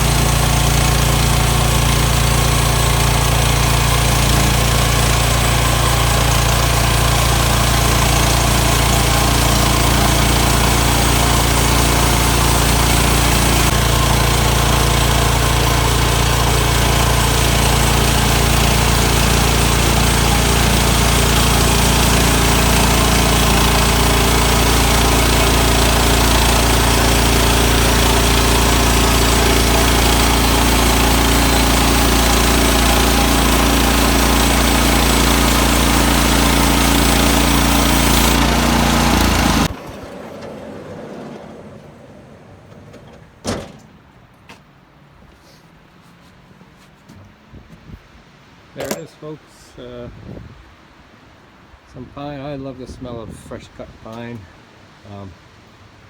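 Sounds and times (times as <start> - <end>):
saw blade cutting board: 0.0 - 39.8, 48.8 - 49.2
sawmill engine running under load: 0.0 - 44.2.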